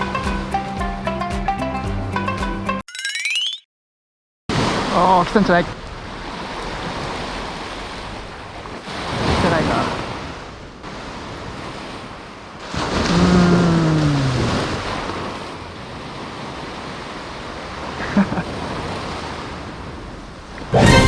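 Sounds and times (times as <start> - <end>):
ocean waves washing onto beach: 4.5 - 21.0.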